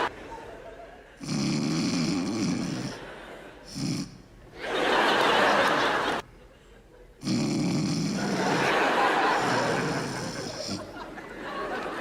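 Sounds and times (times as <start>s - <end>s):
audience laughter: 0.0s - 1.2s, 2.7s - 3.8s, 4.5s - 7.2s, 8.1s - 12.0s
woman snoring: 1.2s - 3.0s
snort: 1.2s - 4.3s, 7.2s - 11.0s.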